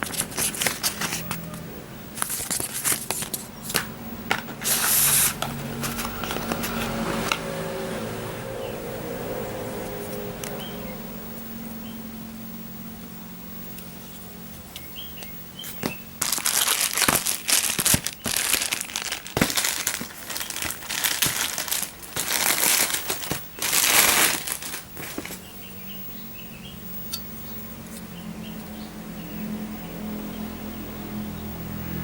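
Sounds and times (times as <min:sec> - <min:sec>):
packaging crinkling and rustling: 0:00.0 - 0:07.4, 0:15.6 - 0:25.5.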